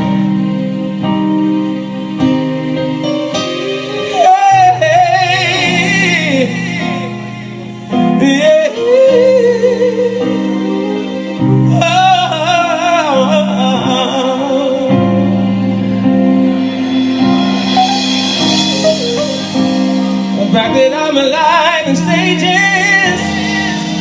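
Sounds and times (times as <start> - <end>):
keyboard and guitar chords: 0.0 - 24.0
person singing with vibrato: 3.8 - 15.6, 17.8 - 24.0.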